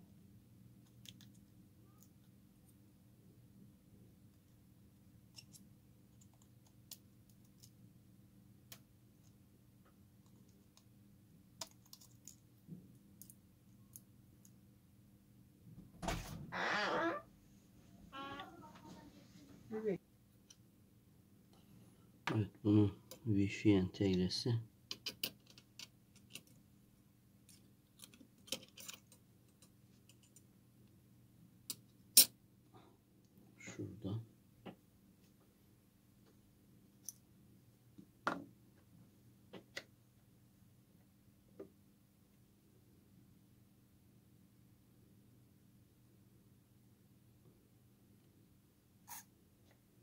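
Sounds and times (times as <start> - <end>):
faint steady hum: 0.0 - 50.0
small clicks and taps: 11.6 - 12.4.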